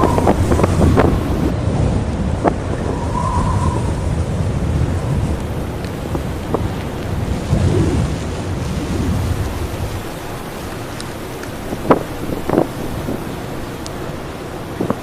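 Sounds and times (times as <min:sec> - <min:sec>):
blizzard wind buffeting microphone: 0:00.0 - 0:15.0.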